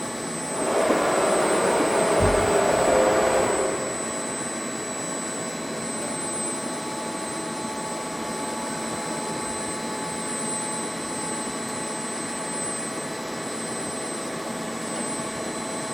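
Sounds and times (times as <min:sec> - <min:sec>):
high-pitched machine whine: 0:00.0 - 0:15.9
boring mill running: 0:00.5 - 0:04.4.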